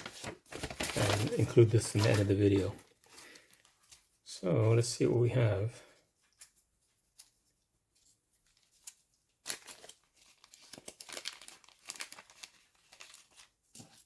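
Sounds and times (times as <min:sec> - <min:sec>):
packaging crinkling: 0:00.0 - 0:04.0, 0:08.5 - 0:14.0.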